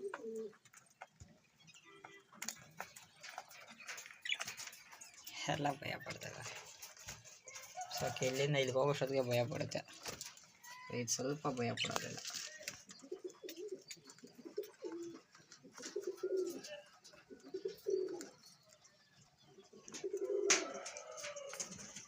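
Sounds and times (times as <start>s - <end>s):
pigeons cooing: 0.0s - 1.3s, 11.6s - 22.0s
small birds chirping: 0.0s - 22.0s.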